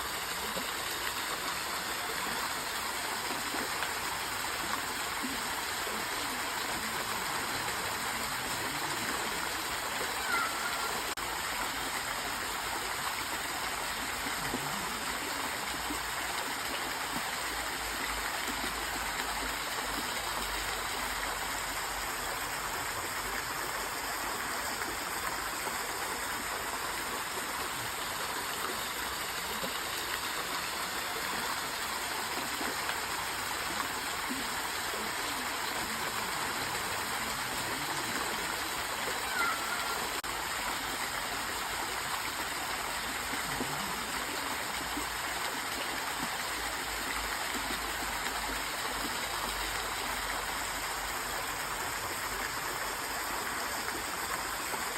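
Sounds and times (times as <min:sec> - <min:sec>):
stream of water flowing: 0:00.0 - 0:54.9.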